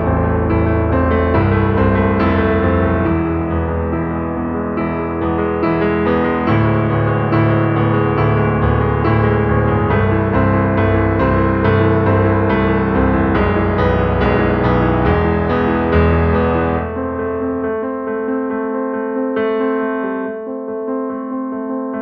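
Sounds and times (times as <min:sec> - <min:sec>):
piano playing notes: 0:00.0 - 0:22.0.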